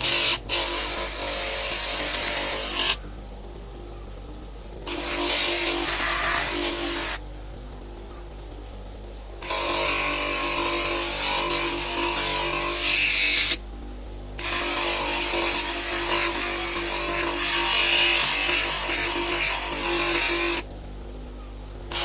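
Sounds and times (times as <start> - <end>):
power tool humming: 4.9 - 7.2, 14.4 - 20.6.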